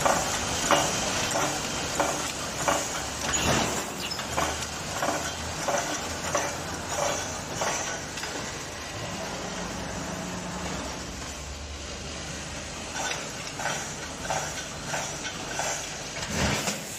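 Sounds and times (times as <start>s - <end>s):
sharp machine clacks: 0.0s - 8.5s, 12.9s - 16.8s
welding machine hum: 0.0s - 16.9s.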